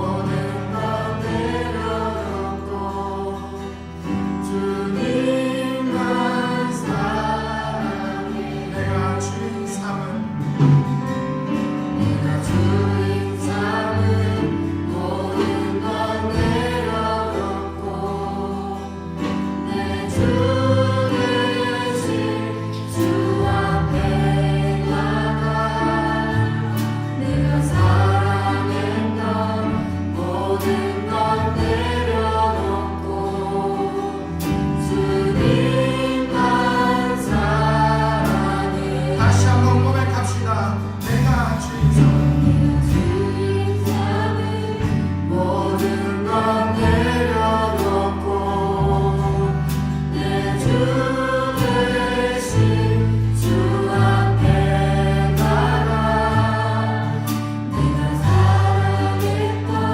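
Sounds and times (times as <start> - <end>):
band playing bass and chords: 0.0 - 59.9
group singing worship song: 0.0 - 59.9.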